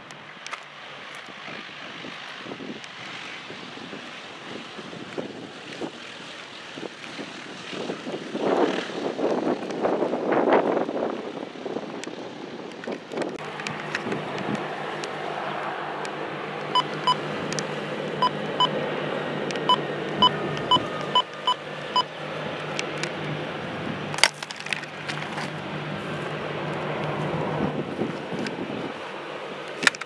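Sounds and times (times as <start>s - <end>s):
background hum and rush: 0.0s - 30.0s
short electronic beeps: 16.7s - 17.2s, 19.7s - 22.1s.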